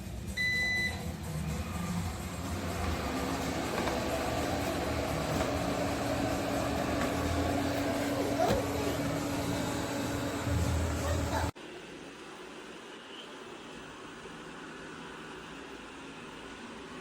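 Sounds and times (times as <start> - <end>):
robot vacuum running: 1.4 - 11.5.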